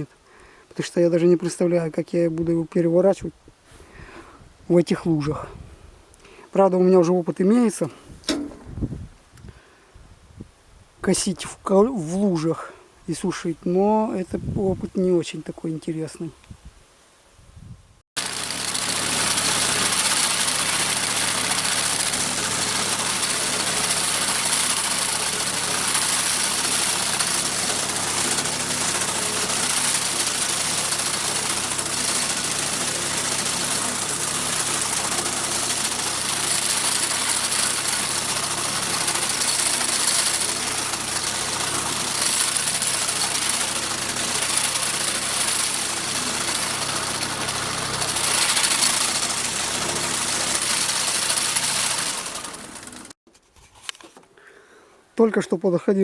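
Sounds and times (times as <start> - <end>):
mowing machine engine running: 8.3 - 8.8, 18.2 - 53.2.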